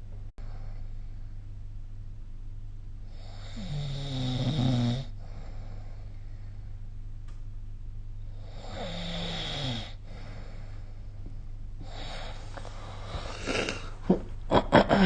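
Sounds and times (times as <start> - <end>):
steady low hum: 0.0 - 15.0
person snoring: 3.1 - 5.8, 8.3 - 10.7, 11.8 - 15.0.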